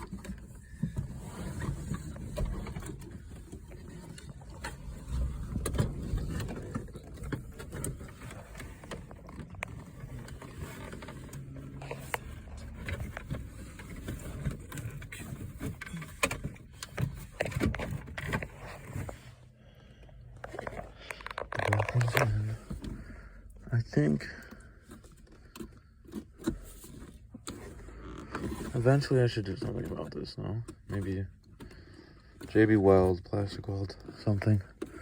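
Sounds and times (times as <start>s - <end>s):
plastic console knocks and scrapes: 0.0s - 19.3s.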